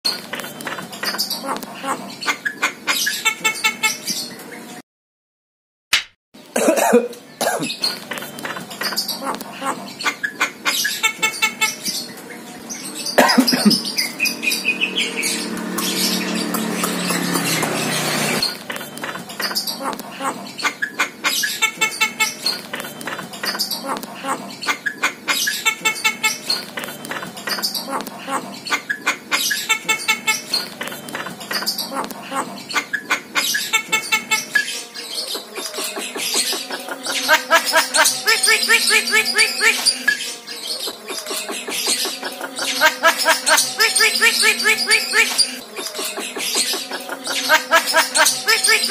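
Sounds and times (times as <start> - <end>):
myna chirps and squawks: 0.1 - 4.3, 7.6 - 48.9
bird calling with clicks and chatter: 7.7 - 38.0.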